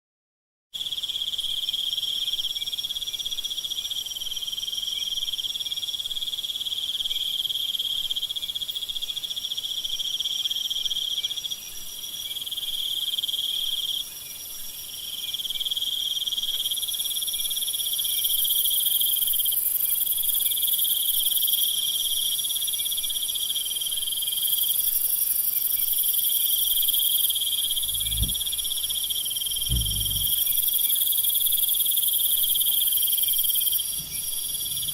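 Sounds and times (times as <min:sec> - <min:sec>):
crickets and insects trilling: 0:12.2 - 0:34.9
high-pitched insect buzzing: 0:26.7 - 0:31.3
low croak: 0:26.7 - 0:32.0.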